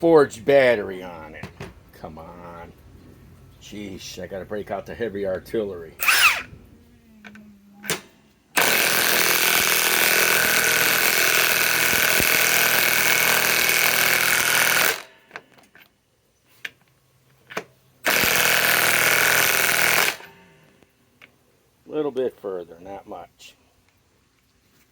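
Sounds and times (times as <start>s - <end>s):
impact wrench hammering: 7.9s - 15.4s, 18.0s - 20.6s.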